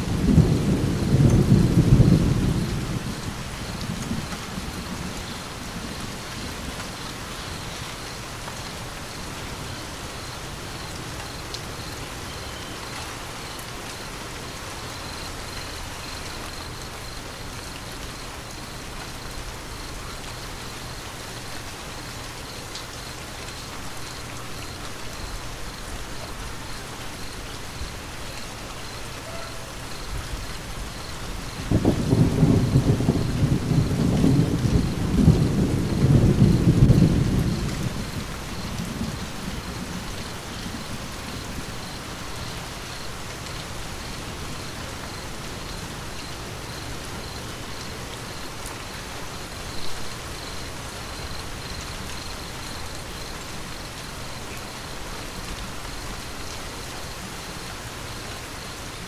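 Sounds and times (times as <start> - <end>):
low rumble of thunder: 0.0 - 13.6, 24.5 - 56.6
steady rain falling: 0.0 - 59.0.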